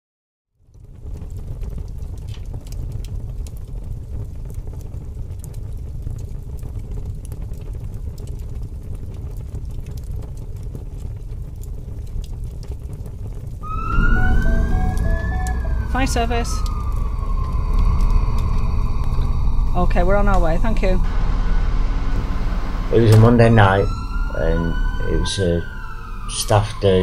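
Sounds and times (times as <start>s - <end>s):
faint crackles and clicks: 0.5s - 23.2s
low rumbling noise: 13.6s - 27.0s.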